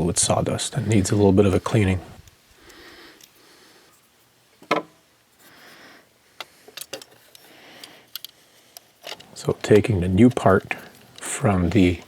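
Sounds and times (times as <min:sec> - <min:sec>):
faint brushing hiss: 0:00.0 - 0:12.0
small parts clicking: 0:06.4 - 0:12.0.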